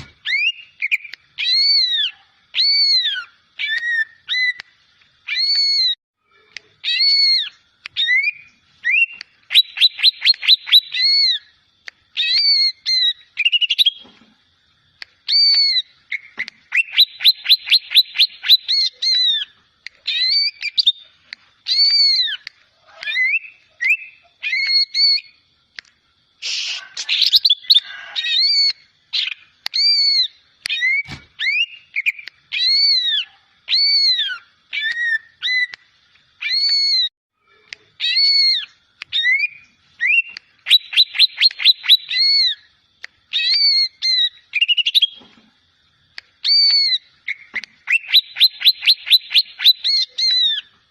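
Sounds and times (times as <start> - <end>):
bird whistling song: 0.0 - 6.0, 6.8 - 11.5, 12.1 - 14.1, 15.2 - 25.4, 26.4 - 37.1, 38.0 - 42.7, 43.3 - 45.2, 46.4 - 50.8
bird scratchy chatter: 26.4 - 27.4.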